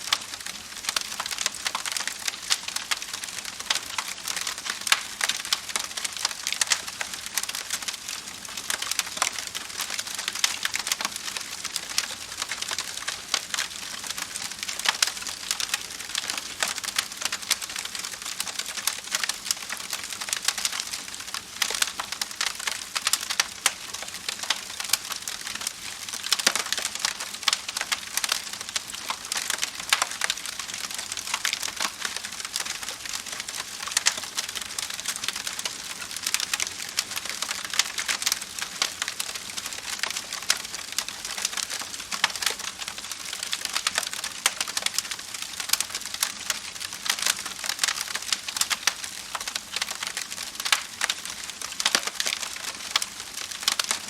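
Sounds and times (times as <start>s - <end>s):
wood fire crackling: 0.0s - 54.0s.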